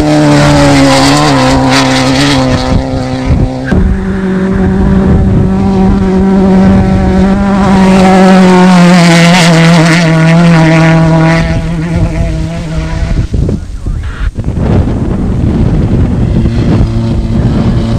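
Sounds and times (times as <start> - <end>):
off-road vehicle engine revving: 0.0 - 17.9.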